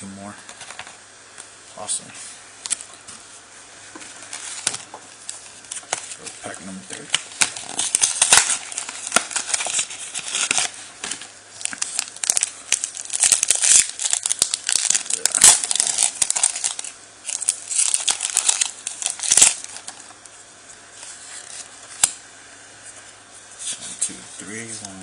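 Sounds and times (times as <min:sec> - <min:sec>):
foil wrapper tearing and crinkling: 0:04.2 - 0:20.2, 0:21.1 - 0:22.2.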